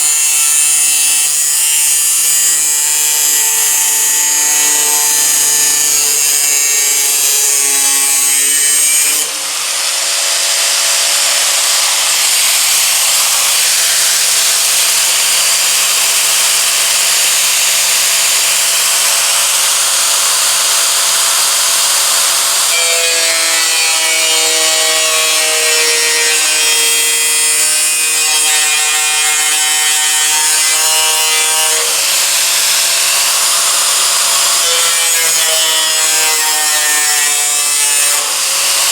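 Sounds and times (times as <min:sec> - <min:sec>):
power tool cutting sheet steel: 0:00.0 - 0:38.9.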